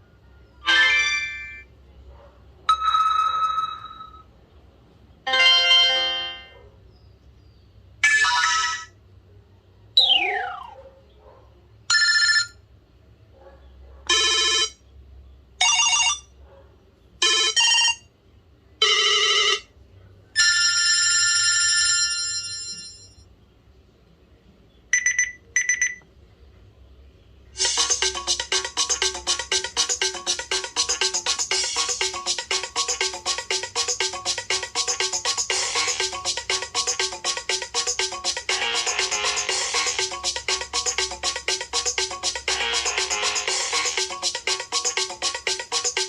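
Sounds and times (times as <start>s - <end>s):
electronic phone alert chimes: 24.9s - 26.0s.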